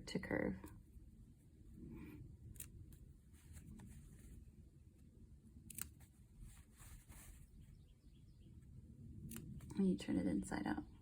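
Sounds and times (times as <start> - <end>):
scissors snipping fabric: 5.6 - 6.0.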